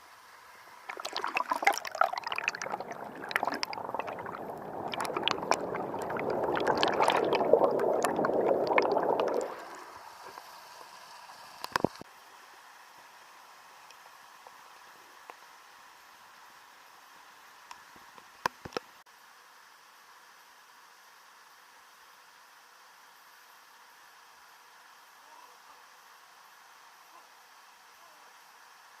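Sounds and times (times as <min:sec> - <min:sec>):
stream water splashing: 0:00.9 - 0:10.5.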